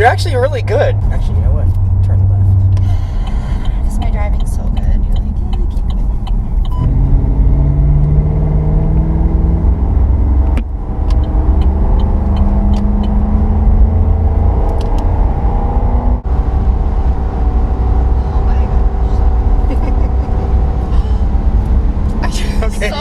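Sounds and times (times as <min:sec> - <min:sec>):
car engine accelerating hard: 0:00.0 - 0:23.0.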